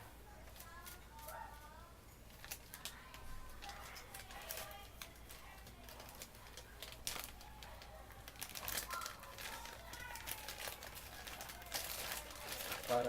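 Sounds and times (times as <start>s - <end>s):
faint voices: 0.0s - 13.0s
plastic packaging crinkling: 2.3s - 13.0s.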